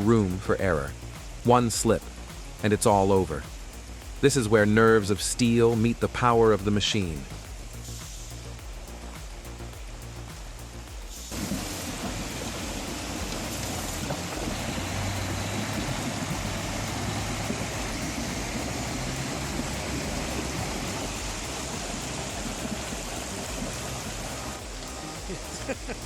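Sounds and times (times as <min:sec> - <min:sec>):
rushing stream water: 0:00.0 - 0:26.0
truck engine running low: 0:11.3 - 0:25.8.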